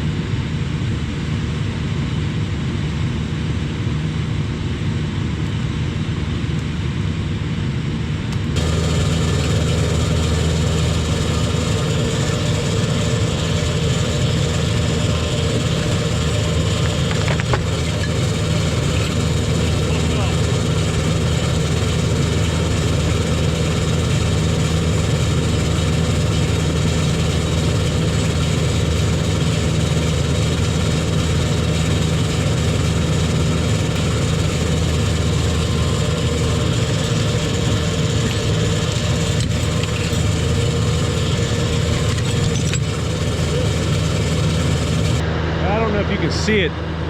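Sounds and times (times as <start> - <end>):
tractor diesel engine running: 8.4 - 47.0.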